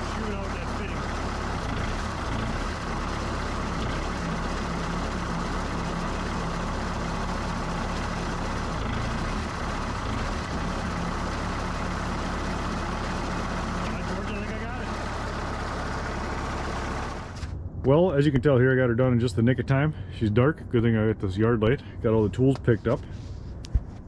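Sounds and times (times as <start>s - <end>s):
diesel engine running: 0.0s - 18.3s.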